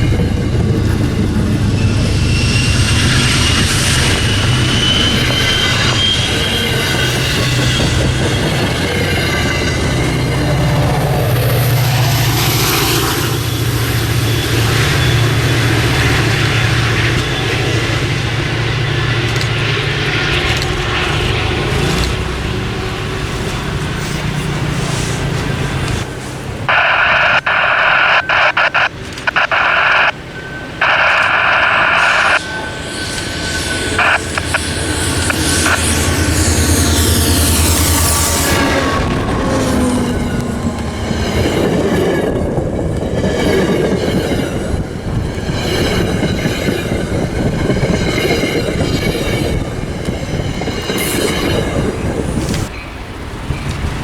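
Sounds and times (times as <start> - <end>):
high wheel squeal: 0.0 - 54.0
locomotive low drone: 0.0 - 54.0
low rumble of train: 0.0 - 54.0
rail and wheel noise: 0.0 - 54.0
locomotive air horn blasts: 26.7 - 41.9.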